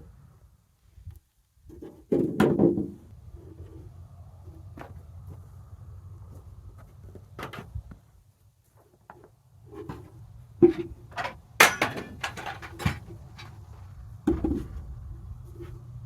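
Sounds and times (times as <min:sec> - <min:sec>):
sharp irregular knocks and clatters: 0:09.0 - 0:13.6.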